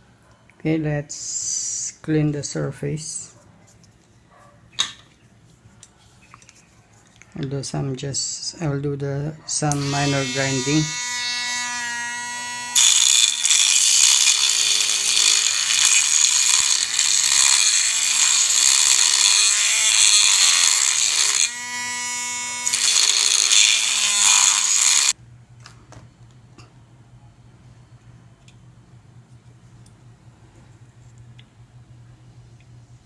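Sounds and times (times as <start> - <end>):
high-speed grinding tool: 9.7 - 25.2.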